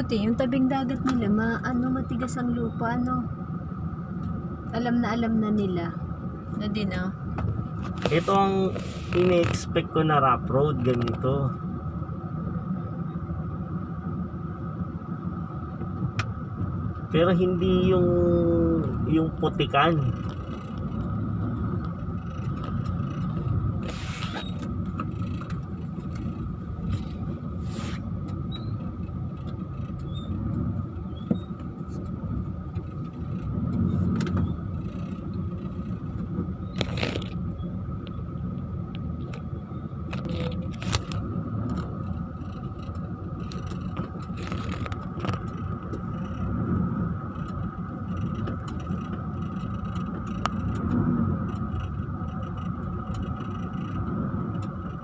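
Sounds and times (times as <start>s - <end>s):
constant high whine: 0.0s - 55.0s
engine and tyres rumbling: 0.0s - 55.0s
knocks and rattles over bumps: 19.9s - 27.5s, 39.0s - 55.0s.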